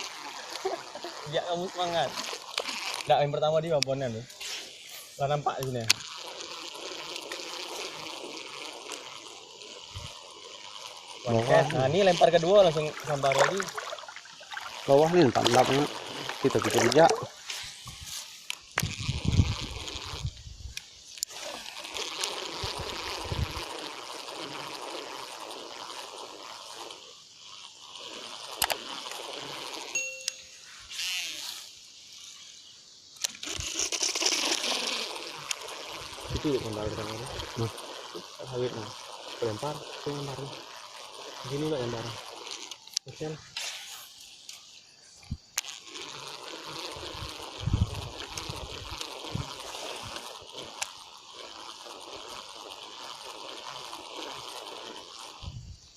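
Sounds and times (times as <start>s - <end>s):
river floodwater running: 12.2s - 17.4s
short beep: 30.0s - 30.6s.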